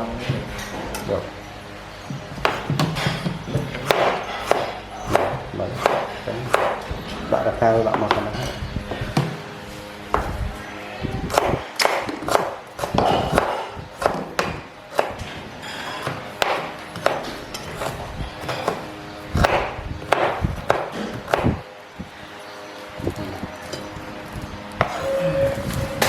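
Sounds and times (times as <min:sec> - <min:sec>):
knife chopping on wooden board: 0:02.1 - 0:07.0, 0:10.1 - 0:10.5, 0:11.3 - 0:21.6.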